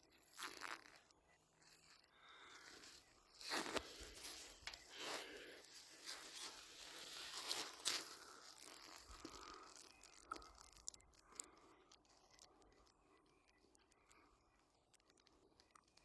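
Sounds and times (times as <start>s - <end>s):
leaves and brush rustling: 2.4s - 10.9s.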